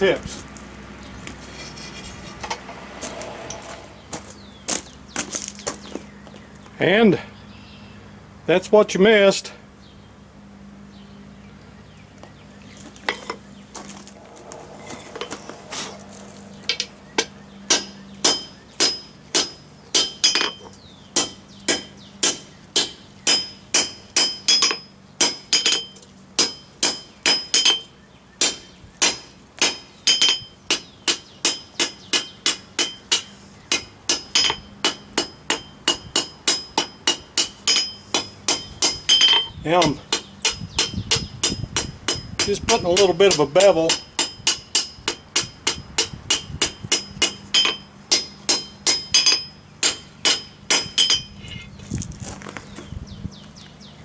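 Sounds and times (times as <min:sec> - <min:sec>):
hammer striking steel on anvil: 0:16.7 - 0:51.4.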